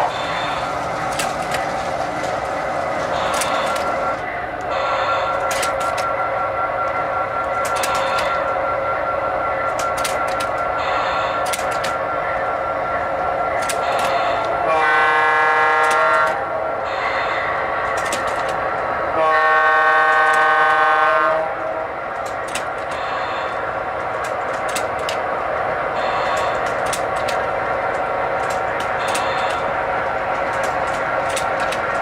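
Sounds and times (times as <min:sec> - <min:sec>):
diesel engine drone: 0:00.0 - 0:32.0
sharp clicks: 0:09.7 - 0:10.6, 0:17.9 - 0:18.6, 0:26.3 - 0:29.6
air horn blasts: 0:13.8 - 0:17.4, 0:19.2 - 0:21.6.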